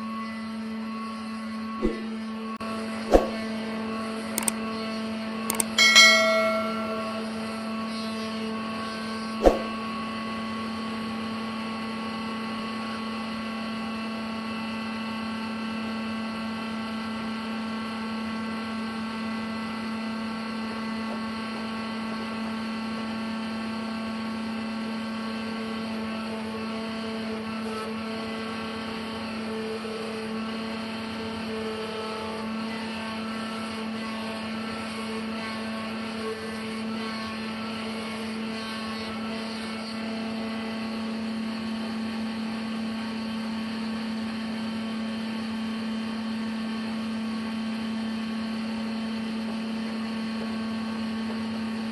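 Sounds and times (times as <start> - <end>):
sharp knock: 3.1 - 3.4, 9.4 - 9.7.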